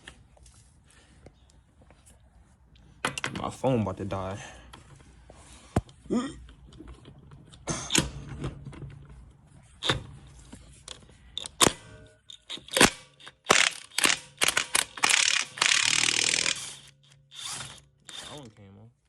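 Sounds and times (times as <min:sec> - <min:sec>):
fast ratchet clicking: 0:12.6 - 0:18.4.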